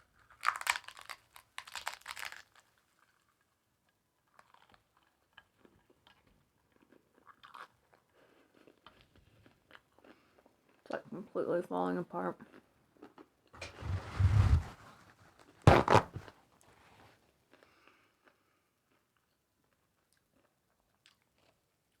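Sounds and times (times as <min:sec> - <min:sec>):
chewing with small crunches: 0:00.0 - 0:11.0, 0:12.4 - 0:13.4, 0:17.5 - 0:22.0
taco shell crunching: 0:00.3 - 0:03.4.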